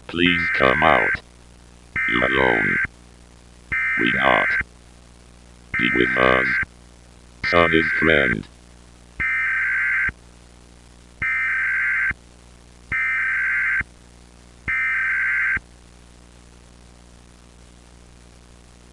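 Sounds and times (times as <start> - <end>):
harsh modem-like data bursts: 0.0 - 1.2, 1.9 - 2.9, 3.7 - 4.7, 5.8 - 6.7, 7.4 - 8.5, 9.2 - 10.2, 11.2 - 12.2, 12.9 - 13.9, 14.7 - 15.6
low hum and hiss: 0.0 - 18.9.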